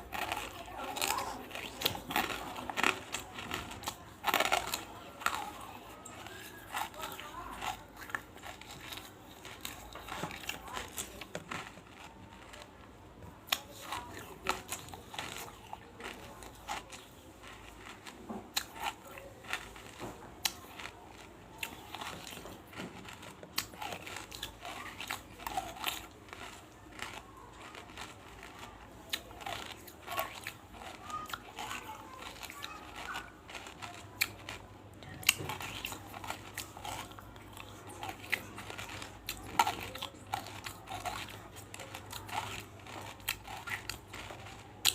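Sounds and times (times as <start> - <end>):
chalky pieces crunching in mouth: 0.0 - 44.9.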